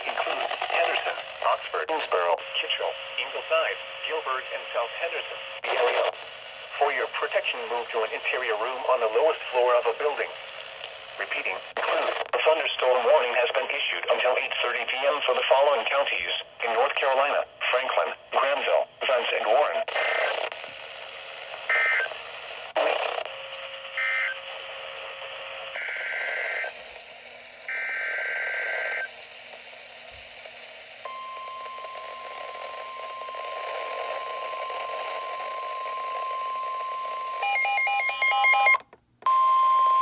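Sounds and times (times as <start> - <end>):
radio hiss: 0.0 - 36.3
steady alarm tone: 36.4 - 40.0.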